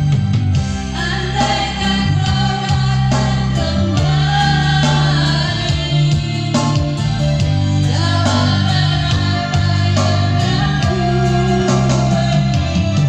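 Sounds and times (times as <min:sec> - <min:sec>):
instrumental backing with bass: 0:00.0 - 0:13.0
person singing: 0:07.9 - 0:13.0.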